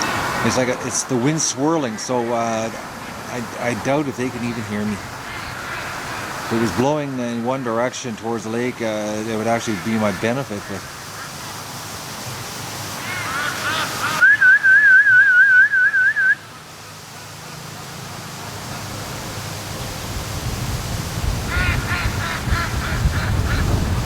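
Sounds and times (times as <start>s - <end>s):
ducks quacking faintly: 2.2s - 7.9s, 8.8s - 11.8s, 13.0s - 14.5s, 21.5s - 24.0s
duck-calling whistle trill: 13.1s - 16.5s
wind buffeting microphone: 19.7s - 24.0s.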